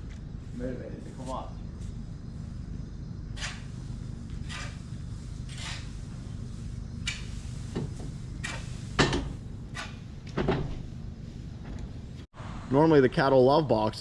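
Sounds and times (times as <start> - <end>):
low machine hum: 0.0 - 14.0.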